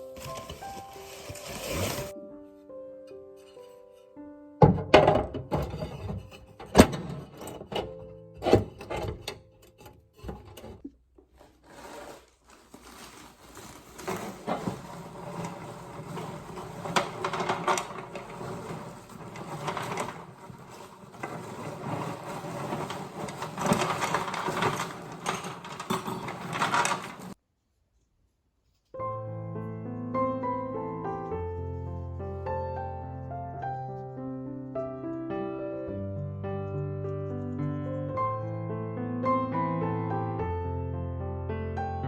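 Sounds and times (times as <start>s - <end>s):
soft piano music: 0.0s - 6.8s, 29.0s - 42.0s
rubbing and scraping on surface: 0.1s - 2.2s, 10.1s - 28.9s.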